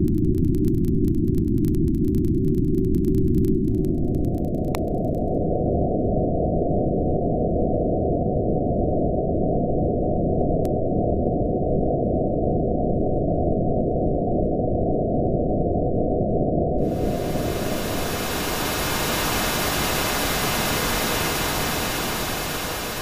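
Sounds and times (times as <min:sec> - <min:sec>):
bright full-range noise: 0:16.8 - 0:23.0
dull rushing synthesized noise: 0:16.8 - 0:23.0.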